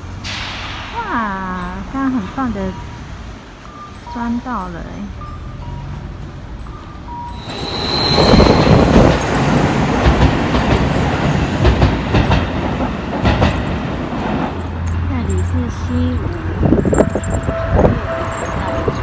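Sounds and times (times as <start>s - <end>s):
electric train rushing rumble: 0.0s - 19.0s
wheels clattering over rail joints: 0.0s - 19.0s
train wheel squeal: 6.7s - 12.0s, 16.7s - 19.0s.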